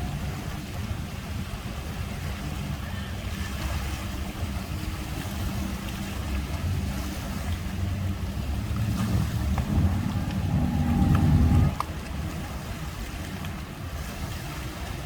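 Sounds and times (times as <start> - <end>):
motorboat engine at low speed: 0.0 - 15.0.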